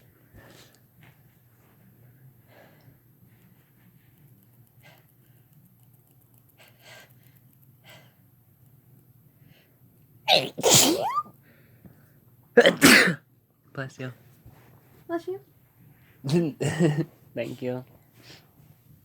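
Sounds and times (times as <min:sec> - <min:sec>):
person sneezing loudly: 0:10.3 - 0:11.3, 0:12.6 - 0:13.2.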